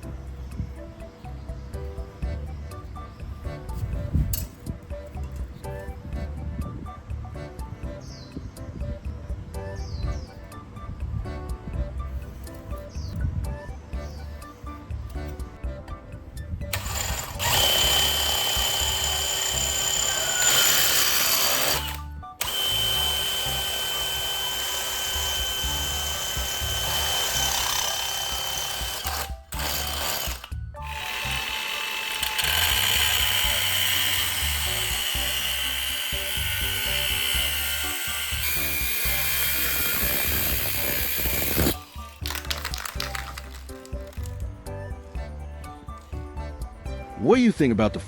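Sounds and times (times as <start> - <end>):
background music with steady beat: 0.0 - 48.0
power tool whining: 16.6 - 44.4.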